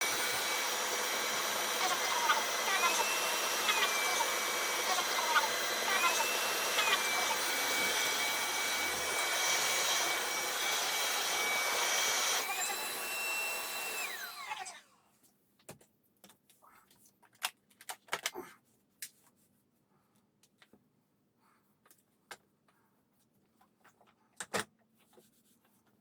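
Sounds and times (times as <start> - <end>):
floor vacuum whining: 0.0 - 15.0.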